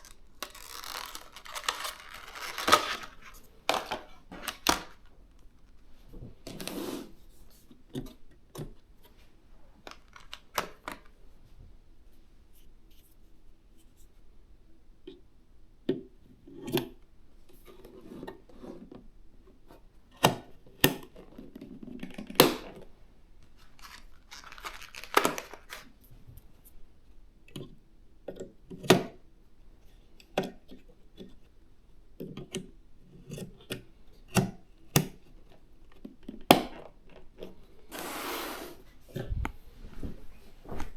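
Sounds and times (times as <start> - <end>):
packaging rustling and tearing: 0.0 - 5.8, 9.8 - 11.1, 23.5 - 25.9.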